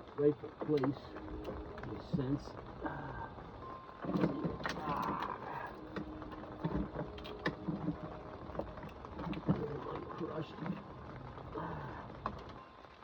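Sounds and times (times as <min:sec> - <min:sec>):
metal parts clicking and knocking: 0:04.0 - 0:10.1.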